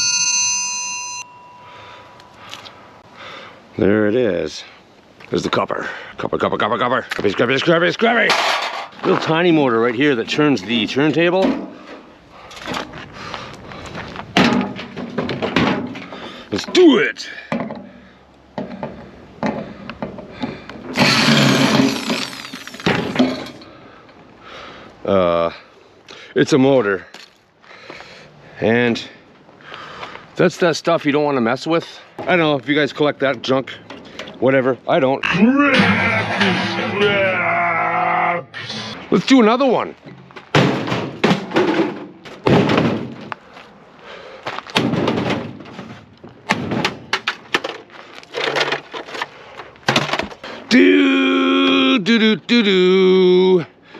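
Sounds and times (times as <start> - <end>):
metal casing thumps and knocks: 14.4 - 16.9, 17.5 - 21.0, 40.0 - 43.4, 44.7 - 50.3.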